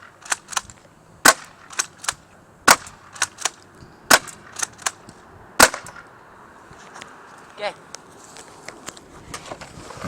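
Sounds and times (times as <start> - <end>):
airsoft shotgun cracks: 0.0 - 5.0, 5.6 - 6.0.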